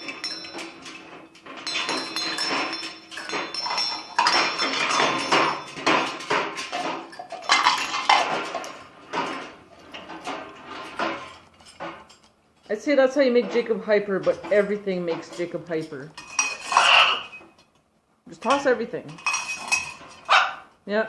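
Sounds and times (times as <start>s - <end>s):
metallic ringing: 0.0s - 8.9s
hard objects clattering and banging: 0.0s - 20.8s.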